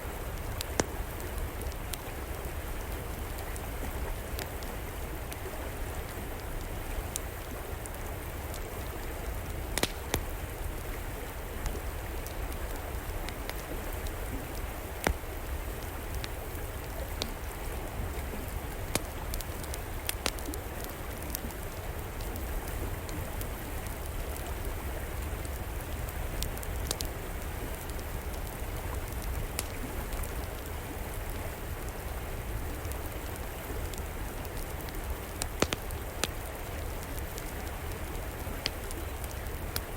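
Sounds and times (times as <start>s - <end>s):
river water flowing: 0.0s - 39.9s
wood fire crackling: 0.1s - 39.9s.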